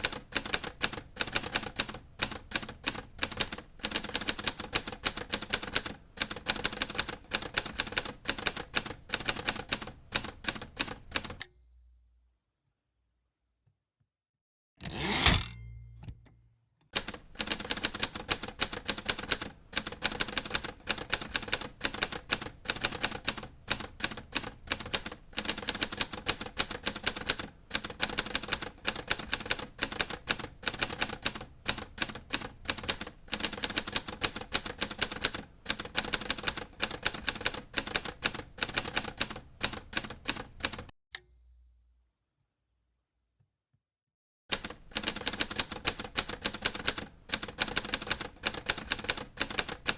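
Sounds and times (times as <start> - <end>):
typewriter keys striking: 44.5 - 49.9.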